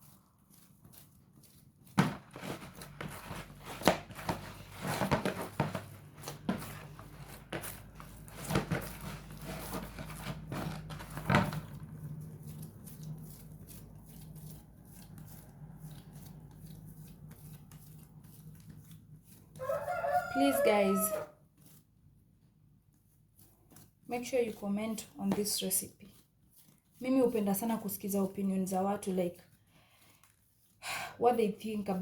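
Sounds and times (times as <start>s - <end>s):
hands kneading dough: 0.0s - 32.0s.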